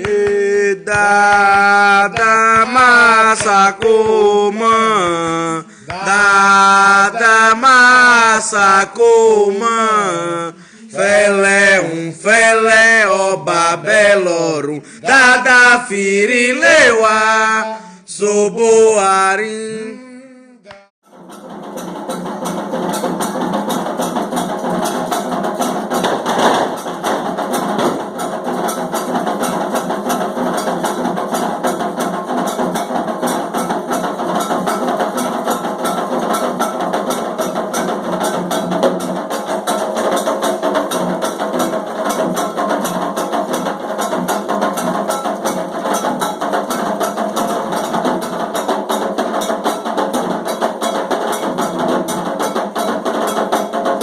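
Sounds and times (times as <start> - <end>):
sharp struck beat: 0.0 - 7.0, 21.0 - 54.0
fast drumming: 0.0 - 8.6, 21.0 - 54.0.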